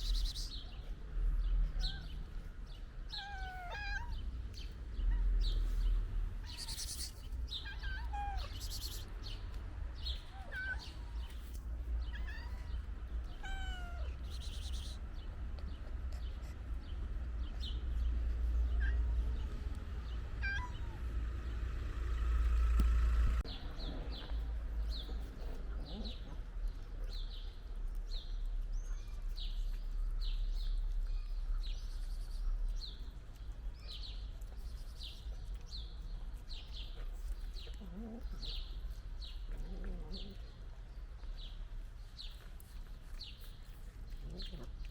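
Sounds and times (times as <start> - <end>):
cats meowing: 1.6 - 15.0, 18.5 - 21.2, 25.2 - 27.4, 36.9 - 38.9, 39.5 - 40.8.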